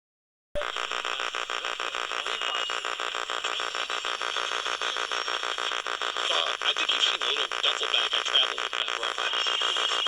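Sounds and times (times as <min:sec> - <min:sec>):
pulsed radio interference buzz: 0:00.6 - 0:10.0
radio static: 0:00.6 - 0:10.0.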